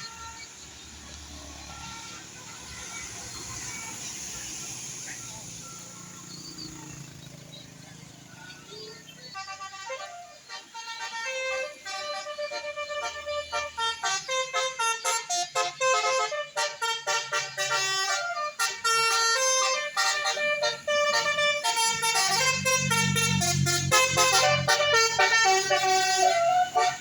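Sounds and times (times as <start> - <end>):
multi-trumpet air horn melody: 0.0 - 5.8, 9.2 - 27.0
low engine rumble: 17.4 - 27.0.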